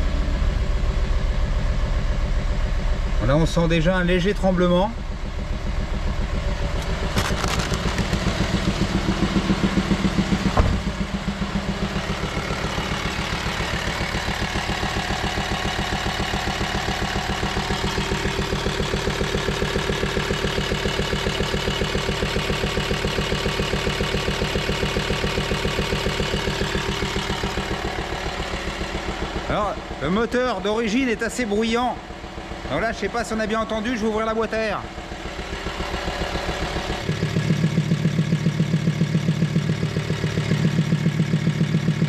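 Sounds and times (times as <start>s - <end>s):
diesel engine idling: 0.0s - 42.0s
sharp engine knock: 6.8s - 11.3s.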